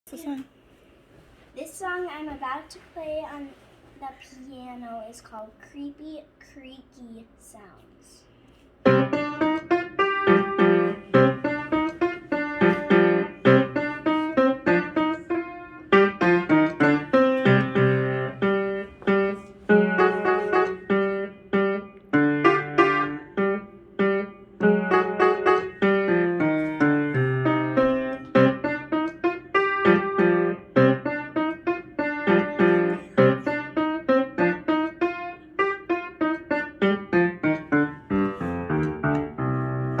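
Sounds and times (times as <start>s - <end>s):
piano notes: 8.8s - 40.0s.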